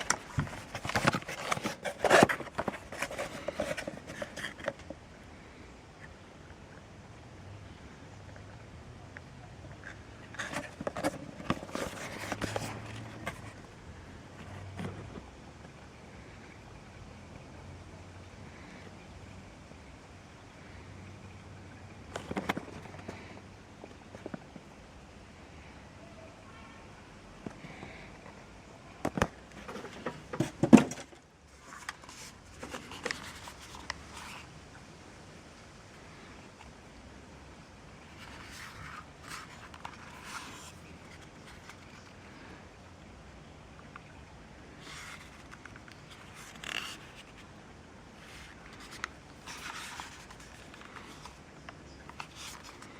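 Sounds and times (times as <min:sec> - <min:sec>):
rustling: 0:00.0 - 0:05.0, 0:09.8 - 0:15.3, 0:28.9 - 0:34.5, 0:38.0 - 0:42.6, 0:44.6 - 0:52.9.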